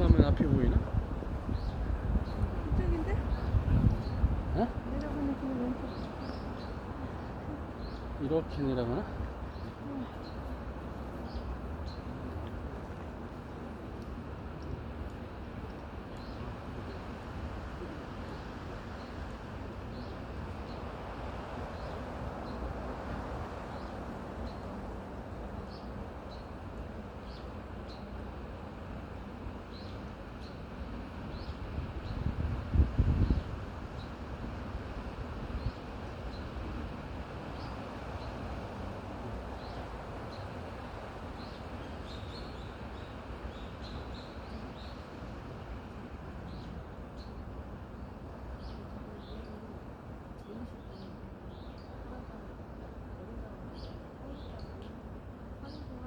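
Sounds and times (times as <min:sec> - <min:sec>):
wind through forest trees: 0:00.0 - 0:56.0
small birds chirping: 0:00.1 - 0:24.8, 0:29.5 - 0:34.2, 0:34.9 - 0:45.3.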